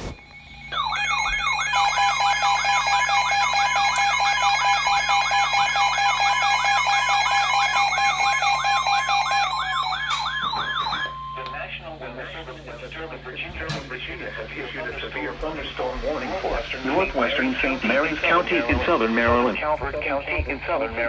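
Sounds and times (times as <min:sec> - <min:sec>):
steady electronic tone: 0:14.7 - 0:19.6.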